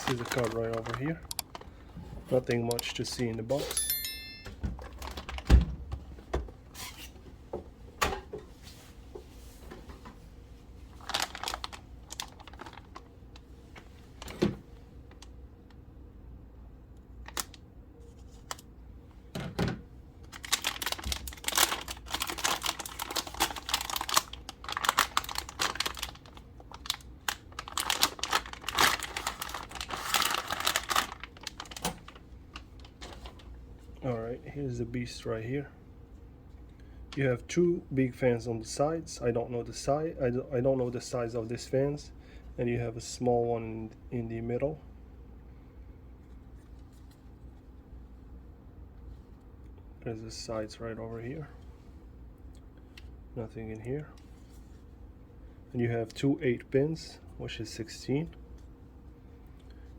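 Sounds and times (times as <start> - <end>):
packaging crinkling and rustling: 0.0 - 3.8, 4.8 - 5.5, 10.9 - 14.4, 17.2 - 18.7, 20.2 - 33.6.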